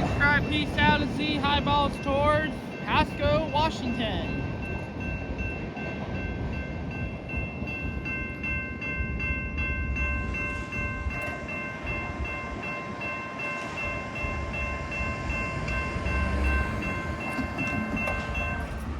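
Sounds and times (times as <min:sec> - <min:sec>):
crossing bell ringing: 0:00.0 - 0:18.9
freight cars rumbling past: 0:15.0 - 0:18.9.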